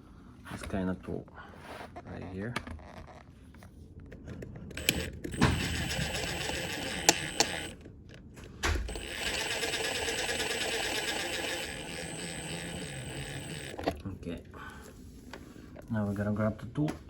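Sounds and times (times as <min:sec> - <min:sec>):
electric drill boring into metal: 0:04.7 - 0:07.8, 0:08.7 - 0:13.9
sharp clicks: 0:04.7 - 0:07.8, 0:08.7 - 0:13.9.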